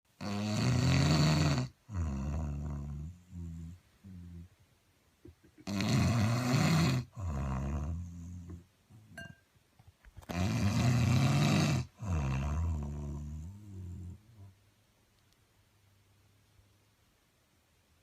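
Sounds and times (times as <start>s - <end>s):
man snoring loudly: 0.2s - 3.6s, 5.6s - 8.4s, 10.3s - 13.6s.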